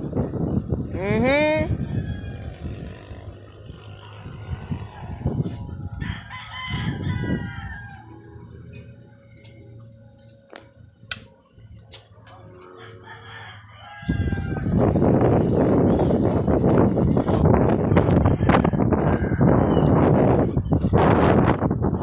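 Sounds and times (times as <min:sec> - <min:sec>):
rooster crowing: 0:01.7 - 0:03.1, 0:06.0 - 0:08.5, 0:12.6 - 0:15.4, 0:17.8 - 0:20.1
loud rushing noise: 0:14.0 - 0:22.0.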